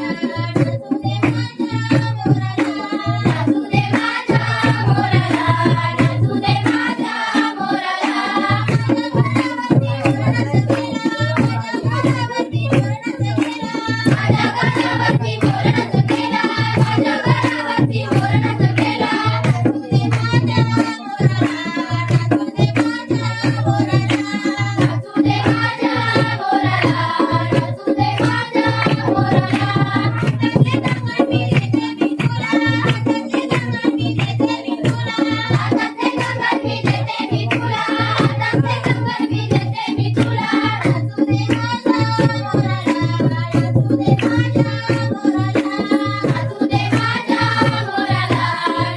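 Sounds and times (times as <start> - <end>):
person singing folk song: 0.0 - 1.2
hand drum beating: 0.0 - 48.9.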